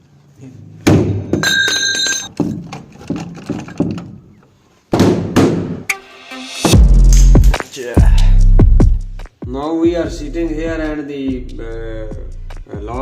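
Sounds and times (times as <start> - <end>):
bell-like metallic ring: 1.4 - 2.3.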